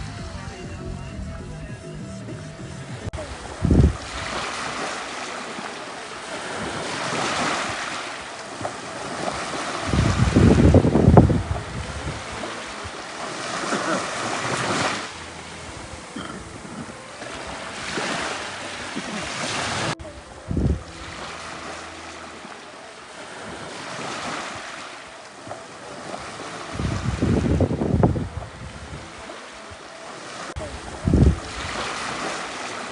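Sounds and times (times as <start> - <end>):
wind buffeting microphone: 2.3 - 5.1, 6.4 - 21.3, 25.5 - 29.4, 30.6 - 32.4
sea waves washing on shore: 2.8 - 32.9.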